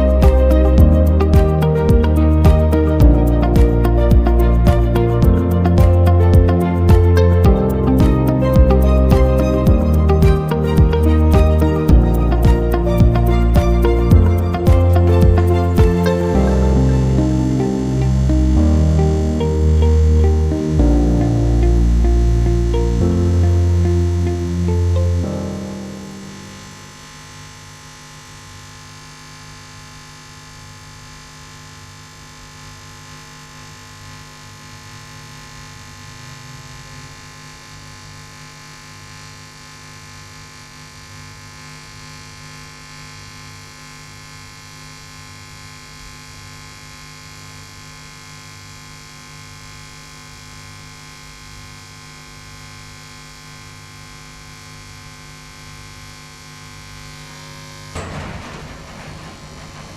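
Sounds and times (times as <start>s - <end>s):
welding arc humming: 25.6s - 43.6s, 52.8s - 59.9s.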